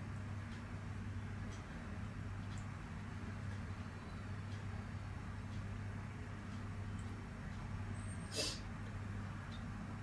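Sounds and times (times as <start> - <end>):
person sneezing: 8.3 - 8.6.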